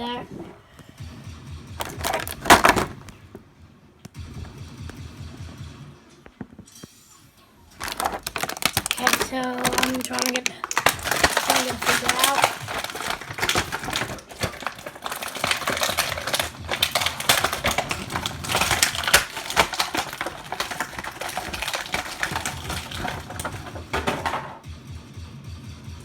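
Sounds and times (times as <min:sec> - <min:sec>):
plastic packaging crackling and clicking: 0:01.8 - 0:03.2, 0:07.7 - 0:24.6.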